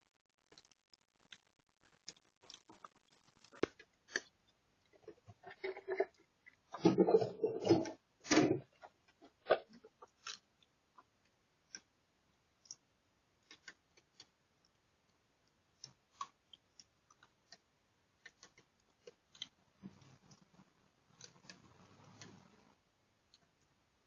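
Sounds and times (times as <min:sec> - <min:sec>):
faint irregular clicks: 0:08.6 - 0:23.8.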